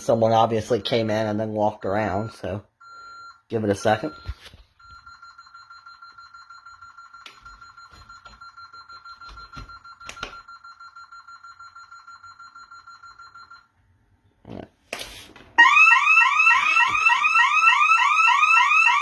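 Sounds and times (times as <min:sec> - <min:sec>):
rapidly pulsing alarm beep: 0:02.0 - 0:13.7.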